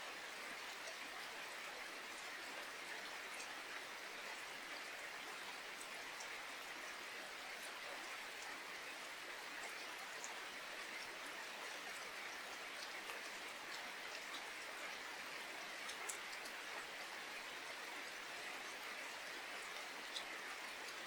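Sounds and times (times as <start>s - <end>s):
rain pattering: 0.1s - 21.0s
water drips ticking: 9.4s - 17.8s.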